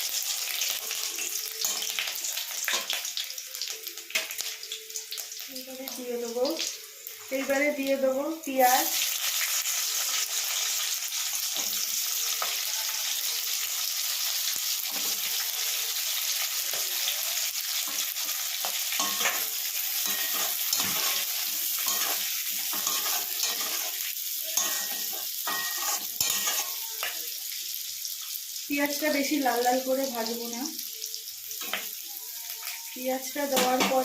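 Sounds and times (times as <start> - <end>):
onion sizzling in hot oil: 0.0 - 34.0
spatula scraping pan: 19.0 - 27.2.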